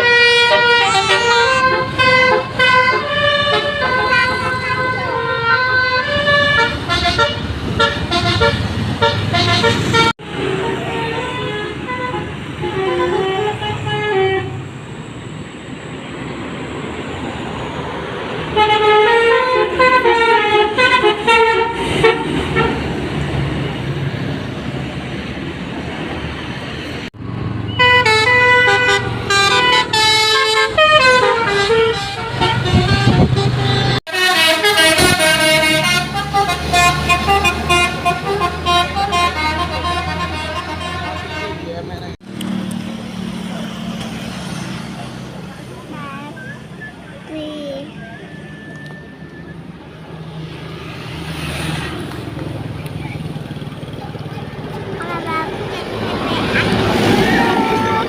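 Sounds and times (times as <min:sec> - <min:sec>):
multi-note musical vehicle horns: 0:00.0 - 0:14.7, 0:18.5 - 0:22.9, 0:27.7 - 0:42.0, 0:56.5 - 0:58.0
engine and road noise: 0:00.0 - 0:58.0.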